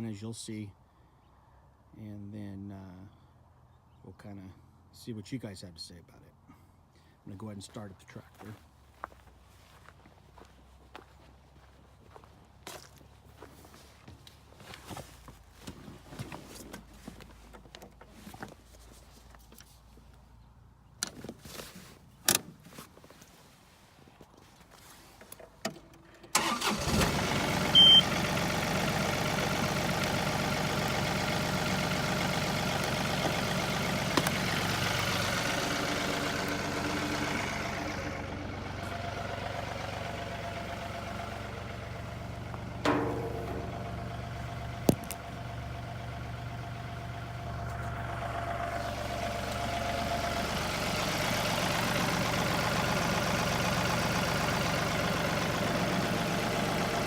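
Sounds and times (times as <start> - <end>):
tractor diesel engine running: 24.5 - 57.0
clicks: 42.8 - 45.4
sharp knocks: 42.9 - 44.0.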